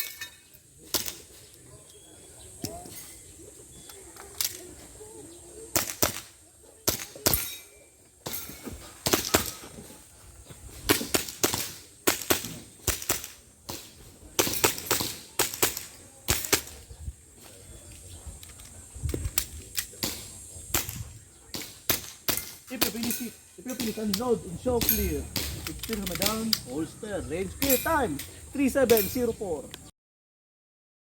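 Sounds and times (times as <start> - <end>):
airsoft pistol shots: 20.0 - 26.6.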